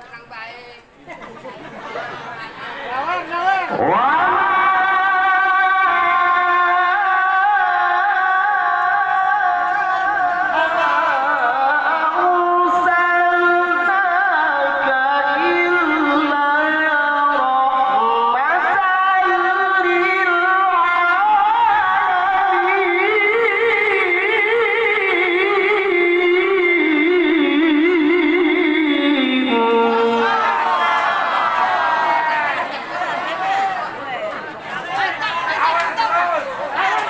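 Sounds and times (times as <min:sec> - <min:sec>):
man reciting melodically: 0:02.9 - 0:30.7.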